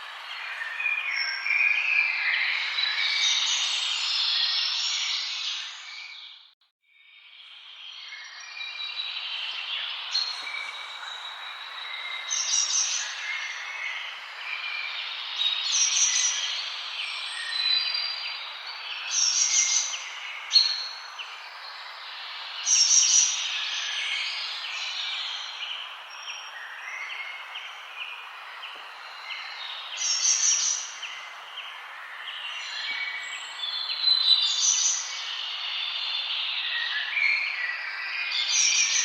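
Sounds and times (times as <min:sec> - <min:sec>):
birds singing and chirping: 0:08.0 - 0:39.0.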